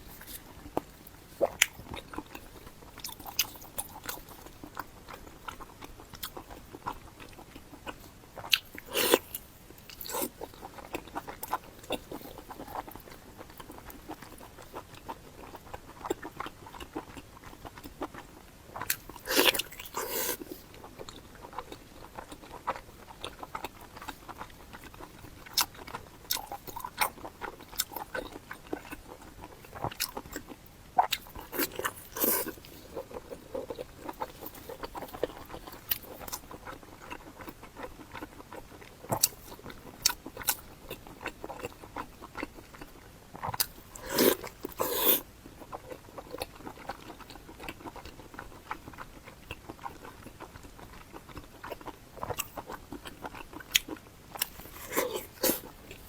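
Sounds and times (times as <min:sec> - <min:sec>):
crunchy chewing and biting: 0:00.0 - 0:56.0.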